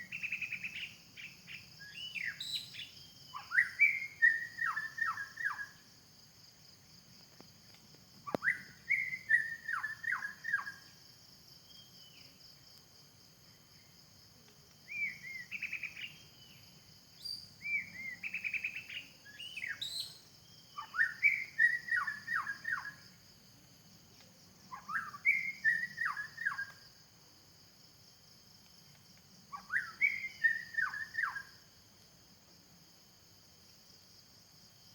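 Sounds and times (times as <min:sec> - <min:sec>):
bird singing whistled notes: 0:00.0 - 0:05.8, 0:08.2 - 0:11.0, 0:14.8 - 0:23.1, 0:24.7 - 0:26.9, 0:29.5 - 0:31.6.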